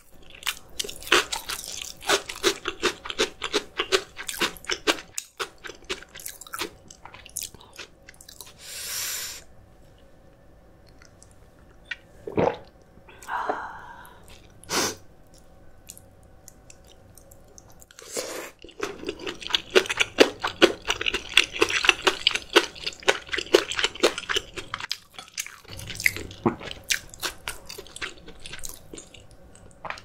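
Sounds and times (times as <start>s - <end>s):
chewing crunchy food: 0.0s - 8.6s, 18.6s - 30.0s.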